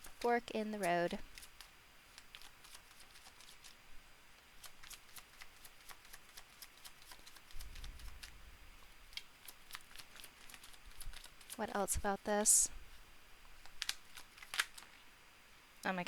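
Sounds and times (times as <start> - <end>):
cards being shuffled: 0.0 - 3.8, 4.6 - 11.8, 13.6 - 15.0.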